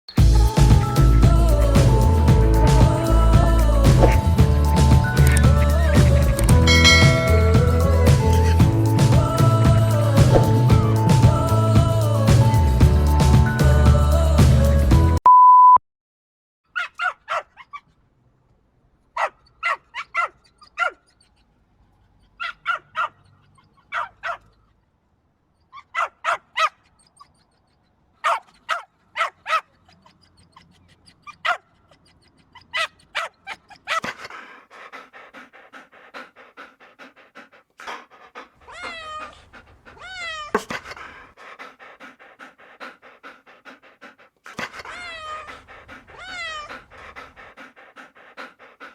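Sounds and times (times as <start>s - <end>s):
short steady beep: 15.3s - 15.8s
dog barking: 16.7s - 17.8s, 19.2s - 21.1s, 22.4s - 24.6s, 25.8s - 26.9s, 28.2s - 30.2s, 31.2s - 34.2s, 38.7s - 41.3s, 44.5s - 47.5s
dog whining: 25.6s - 34.4s, 37.4s - 42.0s, 44.0s - 47.8s.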